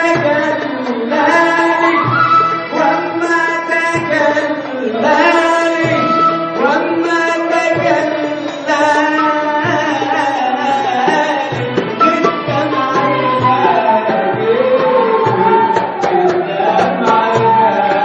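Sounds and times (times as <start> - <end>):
band music with gliding melody: 0.0 - 18.0
drum beat: 9.6 - 18.0.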